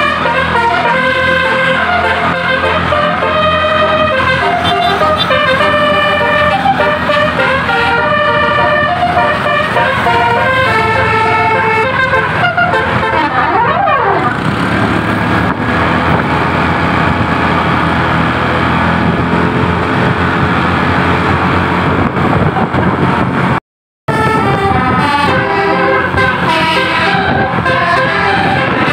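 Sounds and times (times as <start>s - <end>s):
melodic air horn tune: 0.0s - 14.3s, 24.1s - 28.9s.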